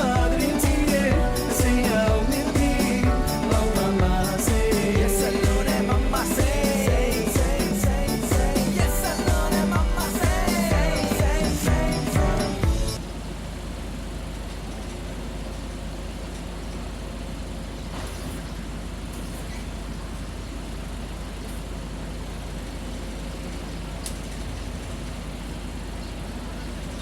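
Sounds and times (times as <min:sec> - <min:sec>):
low machine hum: 0:00.0 - 0:14.4.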